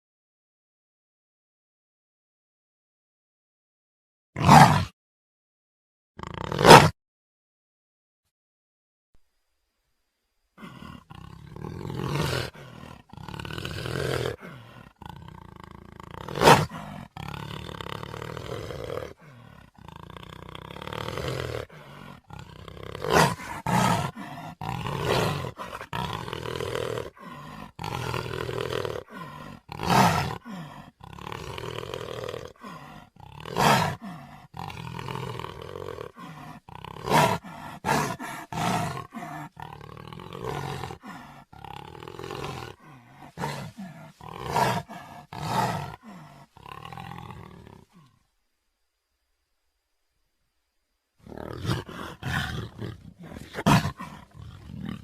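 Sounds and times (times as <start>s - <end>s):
creature roaring: 4.4s - 4.9s, 6.2s - 7.0s, 10.6s - 48.2s, 51.2s - 55.0s.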